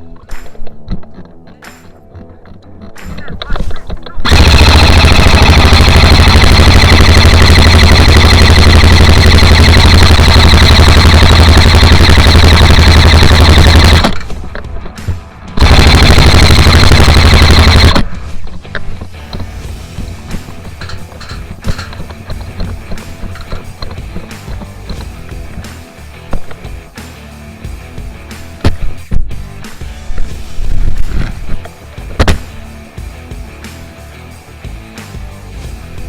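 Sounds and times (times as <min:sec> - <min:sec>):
airsoft gun full-auto bursts: 0:04.2 - 0:14.5, 0:15.6 - 0:18.3.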